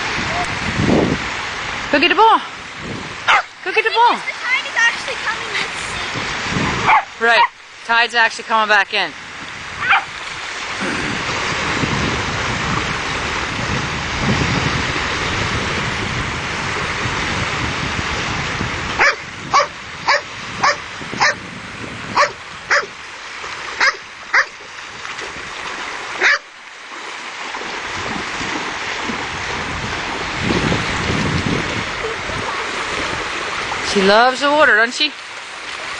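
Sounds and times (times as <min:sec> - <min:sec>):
surf: 0:00.0 - 0:35.9
wind: 0:00.0 - 0:35.9
dog barking: 0:03.3 - 0:03.5, 0:06.8 - 0:07.6, 0:09.8 - 0:10.1, 0:19.0 - 0:21.4, 0:22.2 - 0:22.9, 0:23.8 - 0:24.6, 0:26.2 - 0:26.5.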